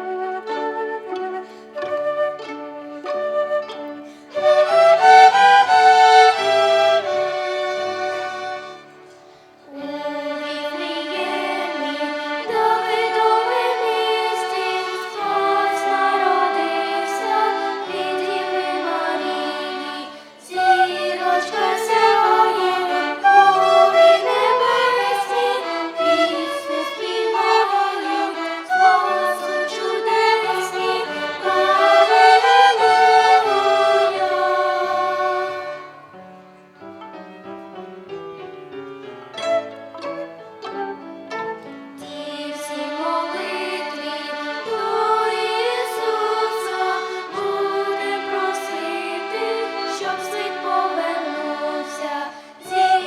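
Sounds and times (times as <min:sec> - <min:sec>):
violin ensemble playing melody: 0:00.0 - 0:53.0
voices singing along: 0:09.7 - 0:36.1, 0:42.0 - 0:53.0.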